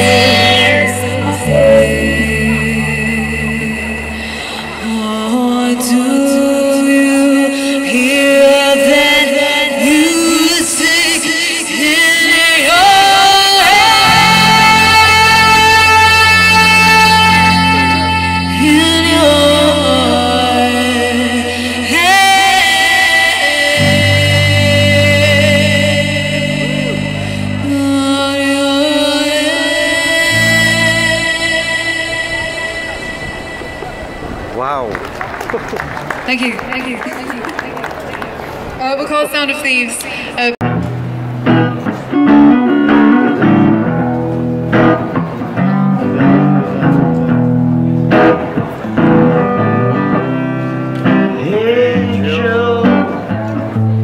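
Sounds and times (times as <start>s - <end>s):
live band playing chords: 0.0s - 22.4s, 23.7s - 37.7s, 40.4s - 54.0s
person singing: 0.0s - 34.1s, 51.3s - 53.3s
blues guitar instrumental: 0.0s - 38.8s, 39.5s - 54.0s.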